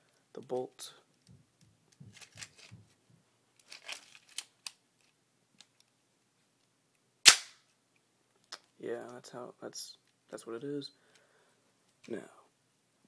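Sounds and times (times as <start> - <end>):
sharp loud snap of toy gun: 7.2 - 7.6.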